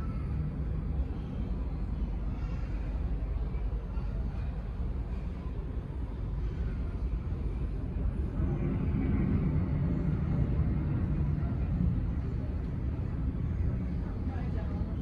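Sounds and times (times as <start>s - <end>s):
jet engines rumbling: 0.0s - 15.0s.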